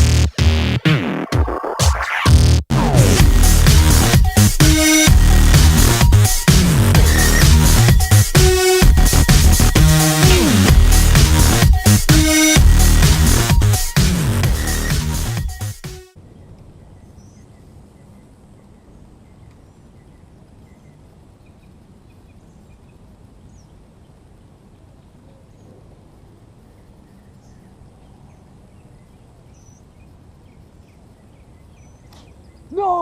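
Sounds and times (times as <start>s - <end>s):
low background noise: 16.2s - 33.0s
faint bird chirps: 16.4s - 33.0s.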